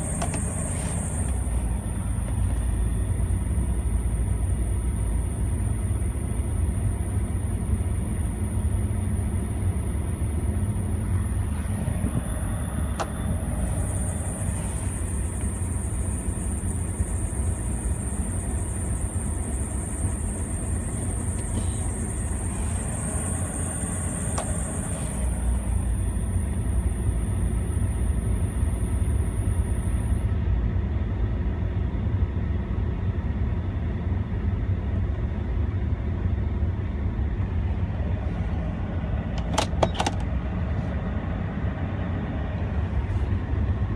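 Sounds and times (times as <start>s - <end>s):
drive belt squealing: 0.0s - 5.7s, 11.1s - 28.4s
car engine idling: 0.0s - 30.0s
clicks: 39.3s - 40.3s.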